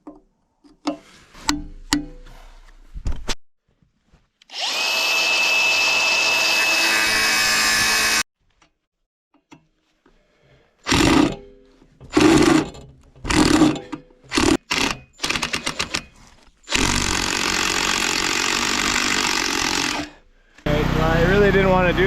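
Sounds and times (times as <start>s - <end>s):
power tool on metal bolt: 4.5s - 8.2s, 10.9s - 11.4s, 12.1s - 16.0s, 16.7s - 20.2s.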